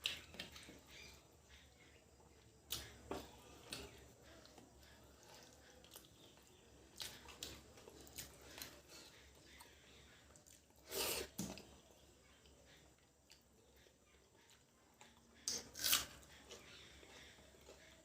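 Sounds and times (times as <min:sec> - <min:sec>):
chewing with wet mouth clicks: 0:03.6 - 0:08.8.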